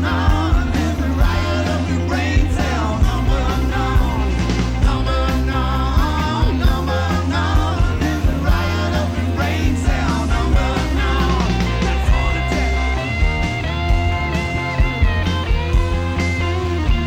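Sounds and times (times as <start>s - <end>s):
person singing: 0.0s - 13.3s
rock band playing: 0.0s - 17.0s.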